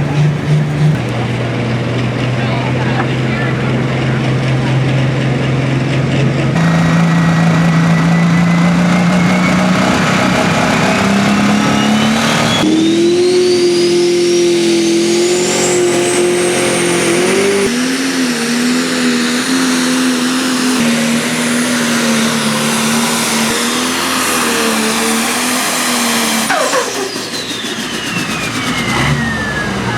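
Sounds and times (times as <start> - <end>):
diesel engines idling and revving: 0.0 - 29.9
turbo whistle: 11.2 - 17.6, 25.0 - 29.9.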